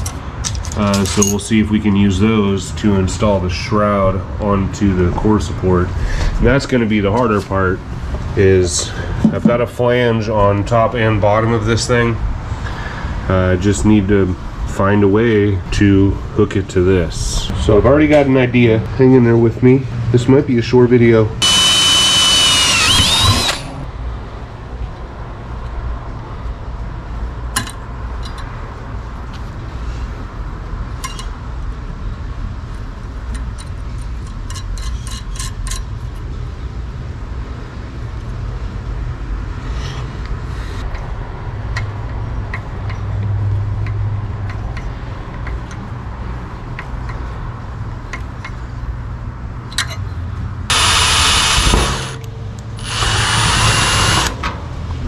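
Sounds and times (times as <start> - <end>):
power drill running: 21.4 - 23.9, 50.7 - 52.2, 52.8 - 54.4.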